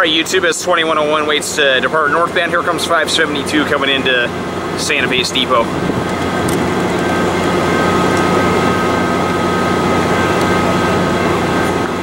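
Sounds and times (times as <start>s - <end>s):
diesel locomotive drone: 0.0s - 12.0s
high whine: 0.0s - 12.0s.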